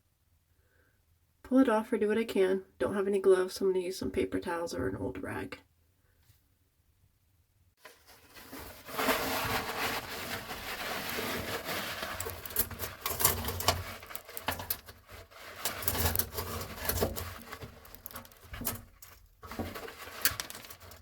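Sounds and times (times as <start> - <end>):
towel rustling and rubbing: 7.8 - 21.0.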